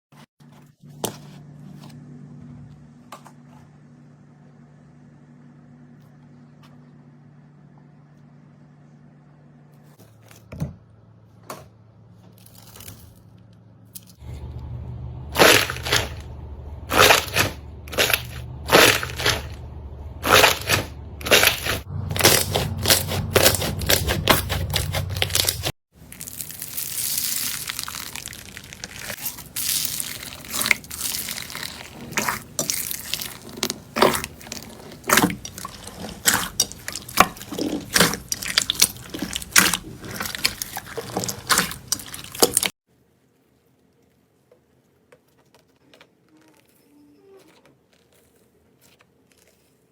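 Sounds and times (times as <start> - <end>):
slime squishing and popping: 20.2 - 42.7.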